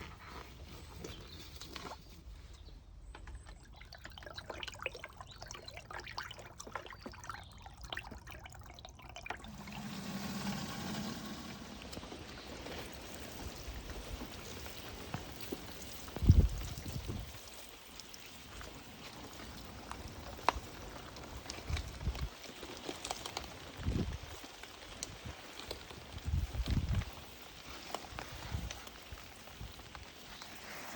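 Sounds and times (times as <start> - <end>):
water drips: 3.0 - 23.2
water pouring and trickling: 3.2 - 30.9.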